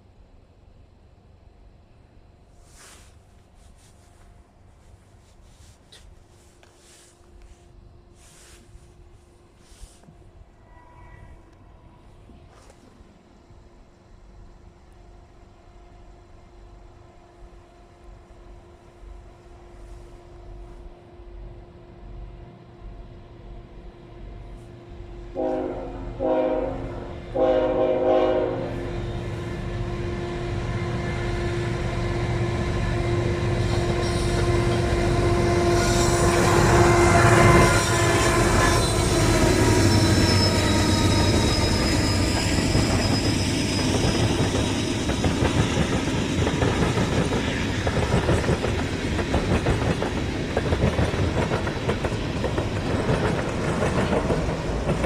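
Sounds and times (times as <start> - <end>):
diesel train horn blasts: 9.6 - 11.4, 24.4 - 43.9
freight cars clickety-clack: 42.2 - 55.0.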